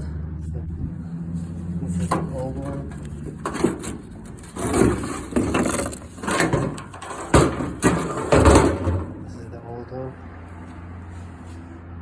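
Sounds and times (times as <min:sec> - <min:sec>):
rustling and scraping handling noises: 0:01.0 - 0:09.3, 0:10.5 - 0:11.8.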